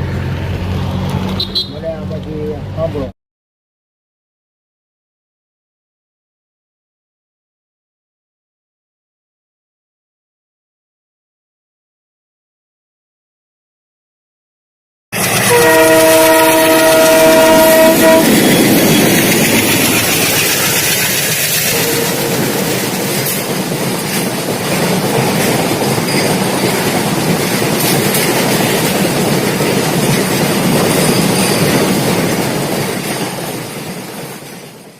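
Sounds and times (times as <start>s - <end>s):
train wheels clattering over rail joints: 15.2s - 34.9s
train horn chord: 15.4s - 18.4s, 21.7s - 22.9s.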